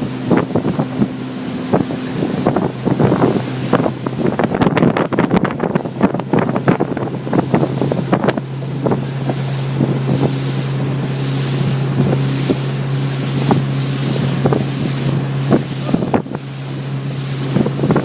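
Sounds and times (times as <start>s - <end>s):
hull slapping water: 0.0s - 18.0s
motorboat engine running: 0.0s - 18.0s
wind buffeting microphone: 0.0s - 18.0s.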